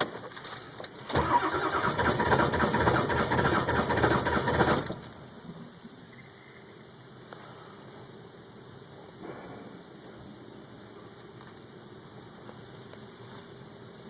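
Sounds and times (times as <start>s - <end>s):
diesel engine cranking on starter: 0.0s - 5.3s.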